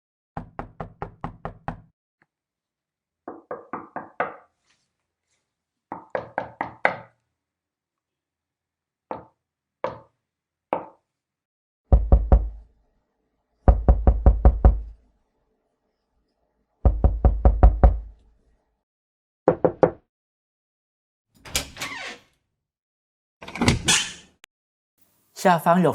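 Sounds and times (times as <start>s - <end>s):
knocking on a door: 0.4s - 1.9s, 3.3s - 4.4s, 11.9s - 12.6s, 13.7s - 14.9s, 16.8s - 18.1s, 19.5s - 20.0s
heavy pounding on door: 11.9s - 12.6s, 13.7s - 14.9s, 16.9s - 18.1s.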